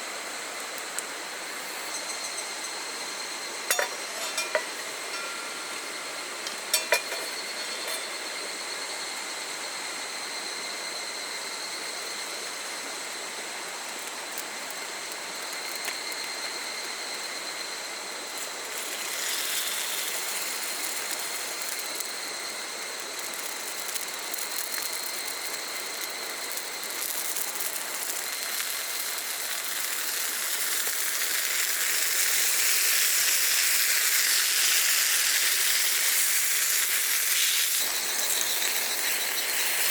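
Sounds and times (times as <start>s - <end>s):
food sizzling in a frying pan: 0.0s - 39.9s
high insect drone: 0.0s - 39.9s
metal clinks: 3.7s - 5.8s
campfire crackling: 12.1s - 39.9s.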